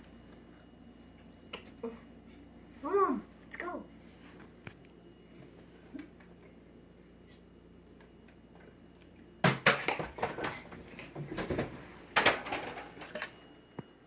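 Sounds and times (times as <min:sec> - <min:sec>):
clattering and rattling: 0:11.3 - 0:13.3.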